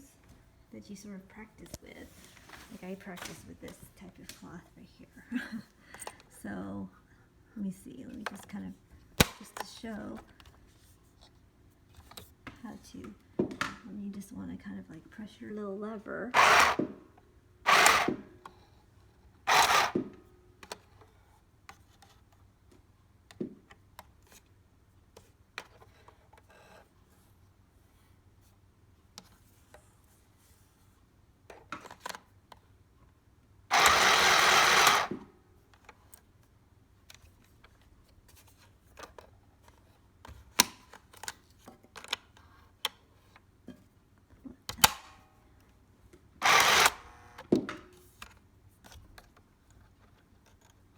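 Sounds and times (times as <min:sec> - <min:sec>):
sewing machine stitching: 0:16.4 - 0:17.0, 0:17.7 - 0:18.3, 0:19.5 - 0:20.1, 0:33.7 - 0:35.2, 0:46.4 - 0:47.4.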